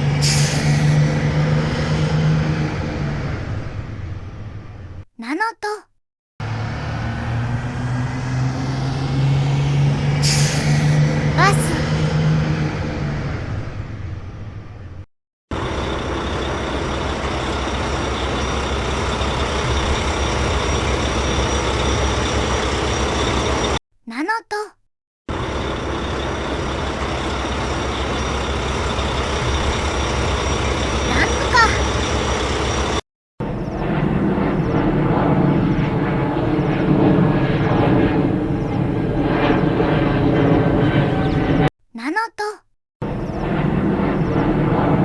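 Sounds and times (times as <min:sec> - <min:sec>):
truck engine running: 0:10.8 - 0:23.8, 0:25.3 - 0:41.5.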